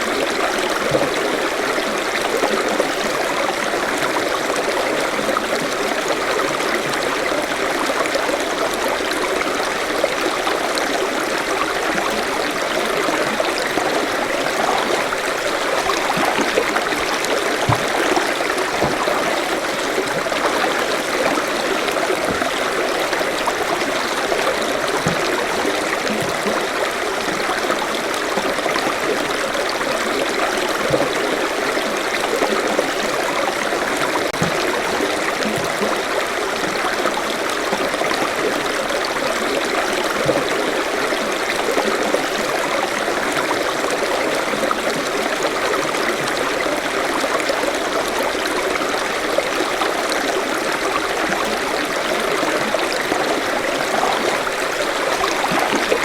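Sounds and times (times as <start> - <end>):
stream rushing over rocks: 0.0 - 56.0.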